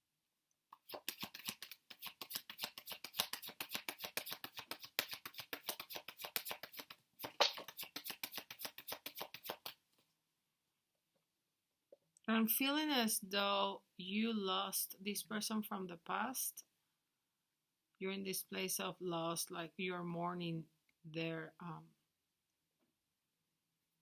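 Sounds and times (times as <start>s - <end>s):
cards being shuffled: 0.8s - 9.8s.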